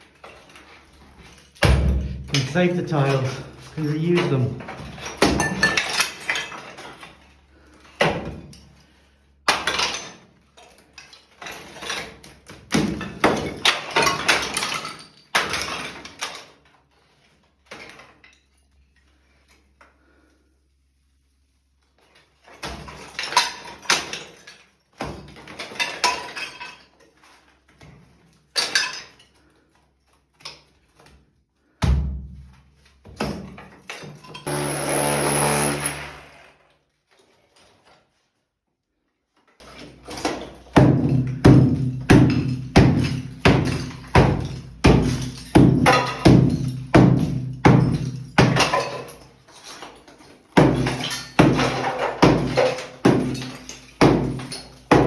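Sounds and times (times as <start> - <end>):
knocks and clatter: 40.0 - 49.2.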